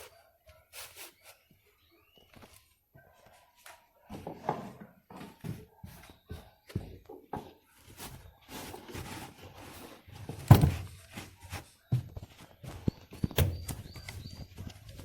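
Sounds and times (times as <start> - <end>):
knocks and clunks: 10.3 - 11.0.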